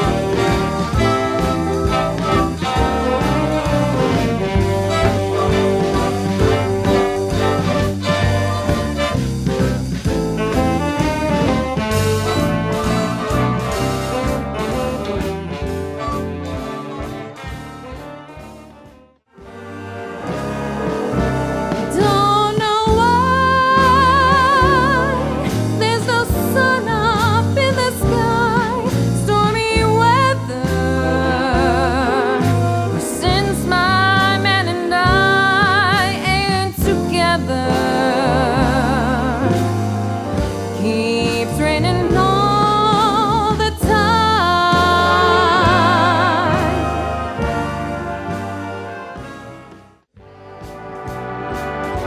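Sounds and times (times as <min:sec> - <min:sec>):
stepping bass line: 0:00.0 - 0:18.9, 0:19.5 - 0:49.4
big band jazz with brass: 0:00.0 - 0:52.0
notes with heavy vibrato: 0:19.4 - 0:28.9.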